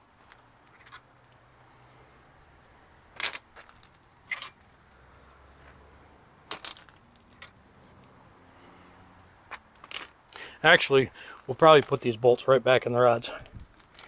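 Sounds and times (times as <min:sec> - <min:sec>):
metal bolts clinking: 0:00.7 - 0:01.1, 0:03.2 - 0:04.6, 0:06.5 - 0:07.6, 0:09.8 - 0:10.2.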